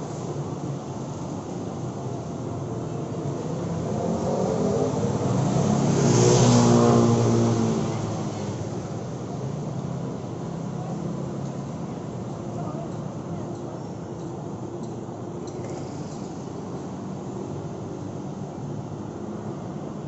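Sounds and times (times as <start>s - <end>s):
vehicle passing by: 3.4s - 11.1s.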